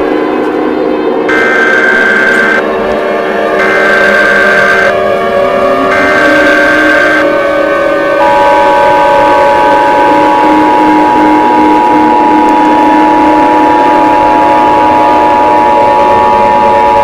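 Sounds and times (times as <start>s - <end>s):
two-tone electronic alarm: 1.3s - 17.0s.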